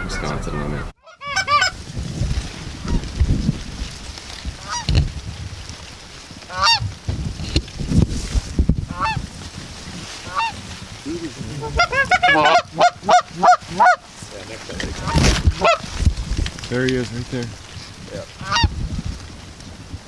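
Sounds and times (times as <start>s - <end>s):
geese honking: 0.0s - 1.8s, 4.6s - 5.0s, 6.5s - 6.8s, 8.9s - 16.0s, 17.8s - 18.7s.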